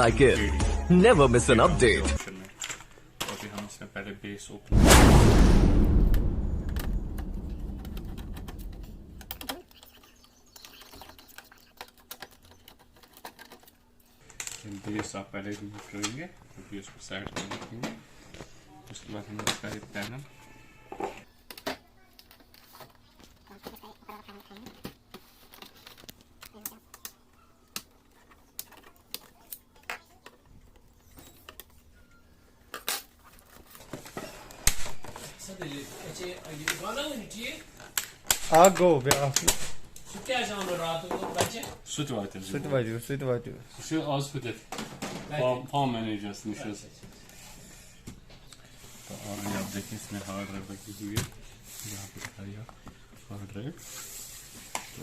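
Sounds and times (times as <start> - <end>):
low rumble: 4.7 - 9.4.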